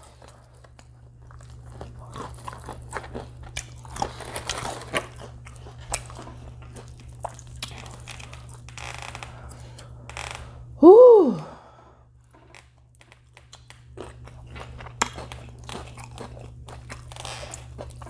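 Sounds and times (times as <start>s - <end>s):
crunchy chewing: 0.0s - 8.7s, 12.3s - 18.0s.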